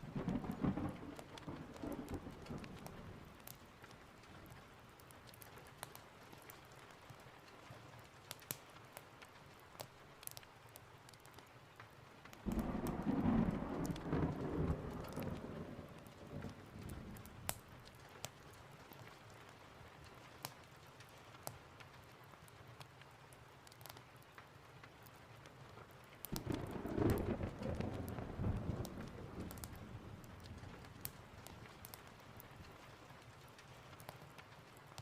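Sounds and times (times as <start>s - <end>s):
thunder rumbling: 0.0s - 3.4s, 12.5s - 17.5s, 26.3s - 32.5s
sharp crackles and clicks: 0.0s - 35.0s
steady rain: 0.0s - 35.0s.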